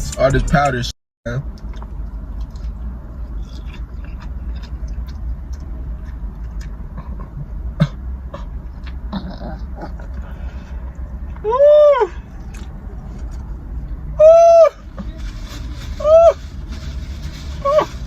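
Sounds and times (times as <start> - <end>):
steady low hum: 0.0 - 15.9
clicks and rustles of eating: 1.5 - 7.4.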